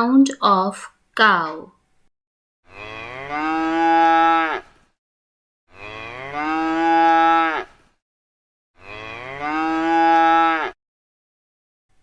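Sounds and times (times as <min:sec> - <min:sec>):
cow mooing: 0:02.7 - 0:04.7, 0:05.7 - 0:07.8, 0:08.8 - 0:10.8.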